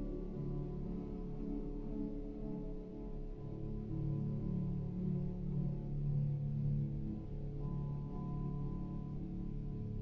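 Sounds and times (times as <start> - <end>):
soft ambient music: 0.0 - 10.0.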